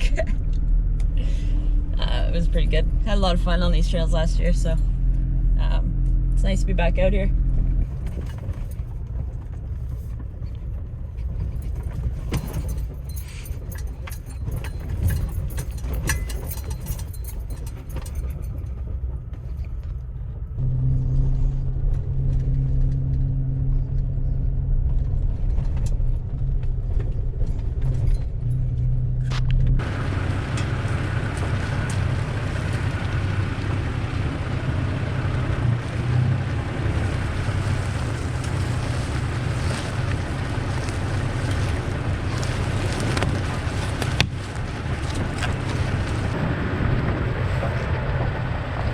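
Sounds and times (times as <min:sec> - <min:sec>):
truck engine running: 0:00.0 - 0:48.9
rattles and knocks: 0:07.4 - 0:20.6, 0:36.7 - 0:46.4.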